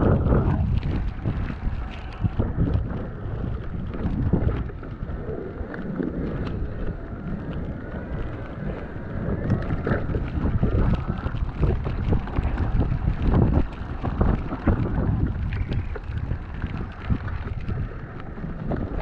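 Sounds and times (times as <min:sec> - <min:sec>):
short crackles: 0:00.0 - 0:19.0
wind buffeting microphone: 0:00.0 - 0:19.0.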